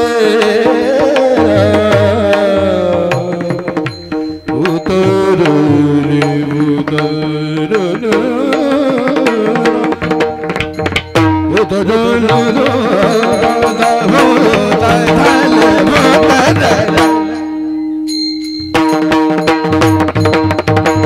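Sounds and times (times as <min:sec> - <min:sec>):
hand drum strokes: 0:00.6 - 0:21.0
person singing ornamented melody: 0:11.5 - 0:17.9.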